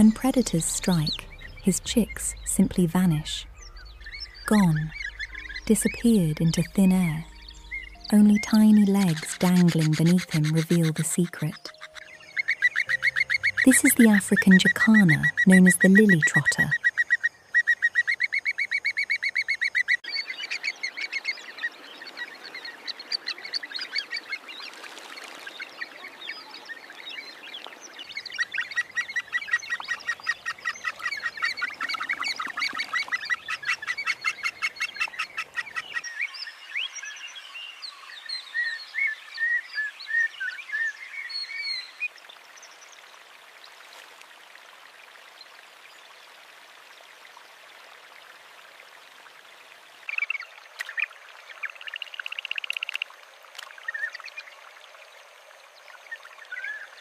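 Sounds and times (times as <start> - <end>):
birds calling in sharp notes: 0.0 - 21.4
bird chirps: 0.0 - 21.6.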